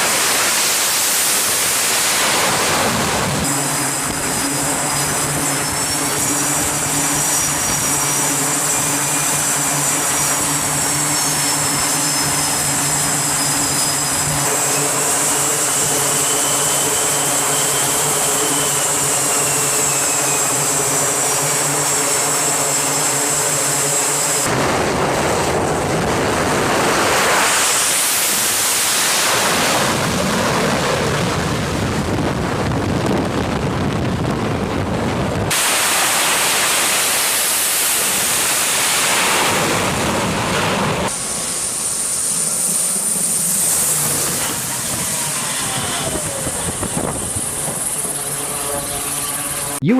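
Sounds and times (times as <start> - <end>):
jet passing at power: 0.0 - 49.9
jet turbine whine: 0.0 - 49.9.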